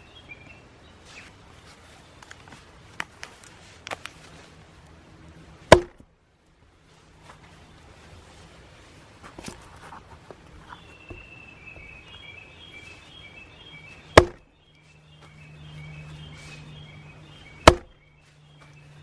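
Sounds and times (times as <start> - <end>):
hatchet splitting logs: 5.7 - 6.1, 14.1 - 14.5, 17.6 - 18.0.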